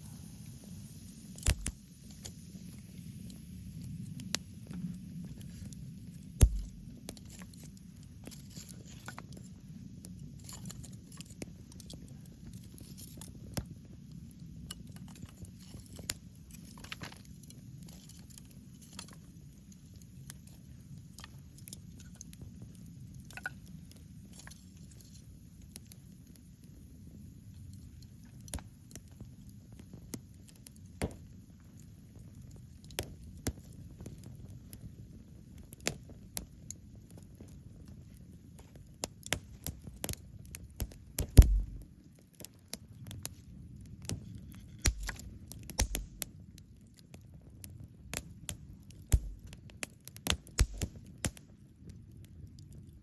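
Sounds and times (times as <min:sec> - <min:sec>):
campfire crackling and popping: 0:00.0 - 0:53.0
faint low rumble: 0:06.2 - 0:07.2, 0:41.2 - 0:42.0.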